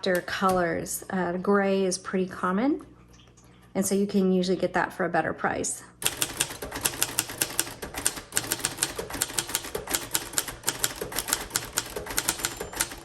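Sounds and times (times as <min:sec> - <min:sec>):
manual typewriter typing: 0:00.0 - 0:00.8, 0:06.0 - 0:13.0.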